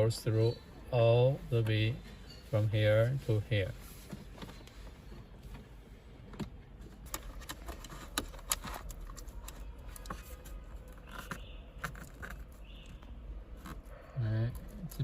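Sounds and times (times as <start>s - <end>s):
cables clicking and rustling: 4.0s - 15.0s.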